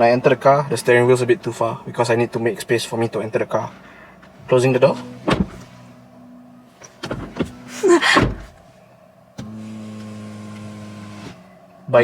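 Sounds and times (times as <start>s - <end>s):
car door shutting: 4.2s - 6.0s, 6.8s - 8.6s, 9.4s - 11.4s
electric motor hum: 9.4s - 11.5s.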